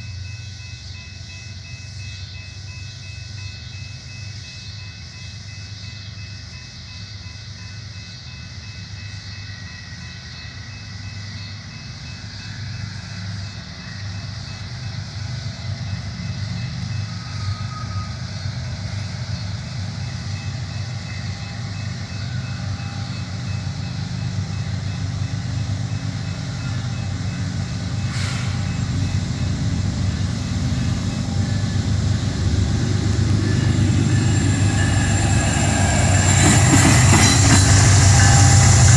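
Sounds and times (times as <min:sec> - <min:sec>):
train rolling along tracks: 0:00.0 - 0:38.9
faint high steady tone: 0:19.4 - 0:38.9.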